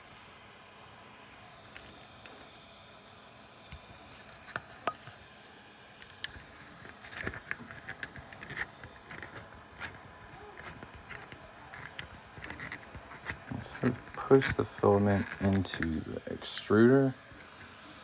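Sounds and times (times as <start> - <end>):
faint steady background noise: 0.0 - 18.0
plastic parts clicking: 6.0 - 16.0.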